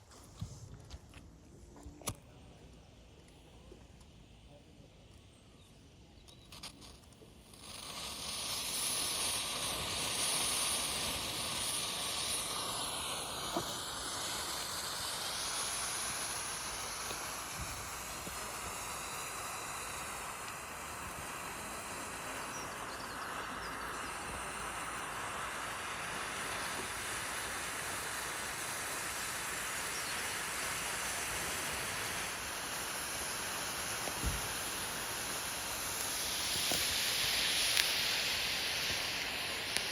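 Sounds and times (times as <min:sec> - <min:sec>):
rocket propellant hissing: 0:00.0 - 0:39.9.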